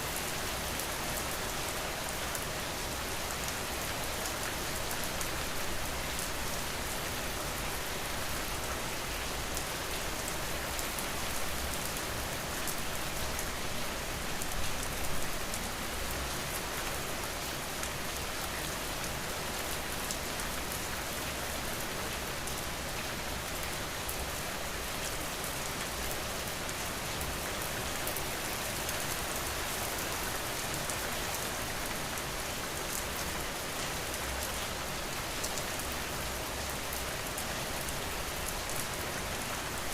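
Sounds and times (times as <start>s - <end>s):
steady rain falling: 0.0s - 39.9s.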